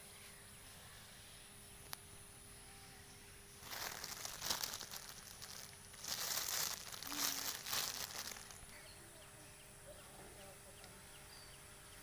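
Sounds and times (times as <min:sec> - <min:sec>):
crinkling and rustling: 0:03.6 - 0:08.8.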